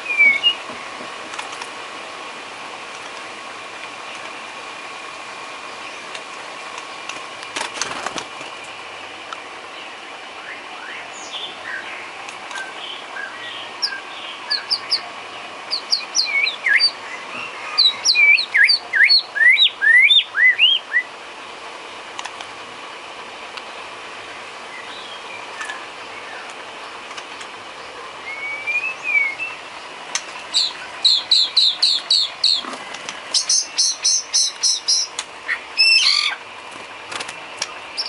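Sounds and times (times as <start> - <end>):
bird singing whistled notes: 0.0 - 0.6, 10.4 - 15.0, 15.7 - 21.1, 27.8 - 29.6, 30.5 - 32.6, 33.3 - 36.4
faint steady hum: 0.0 - 38.0.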